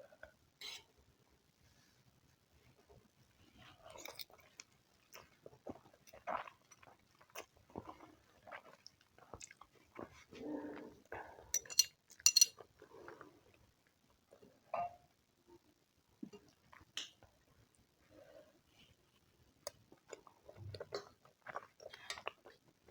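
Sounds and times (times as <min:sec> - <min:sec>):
chewing and mouth smacks: 0:03.9 - 0:10.2.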